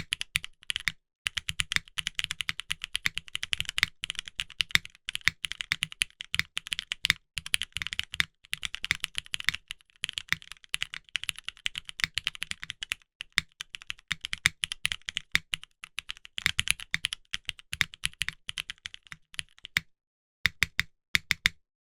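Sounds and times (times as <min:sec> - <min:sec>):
fast typing on mechanical keyboard: 0:00.0 - 0:19.8.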